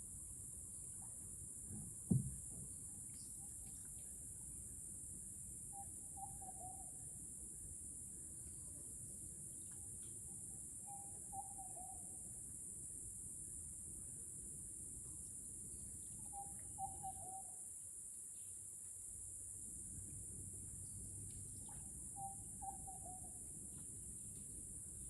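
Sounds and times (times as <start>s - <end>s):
insects droning: 0.0s - 25.0s
dull knock: 1.7s - 2.7s
bird wavering call: 5.7s - 7.0s, 10.9s - 12.2s, 16.2s - 17.6s, 21.7s - 23.4s.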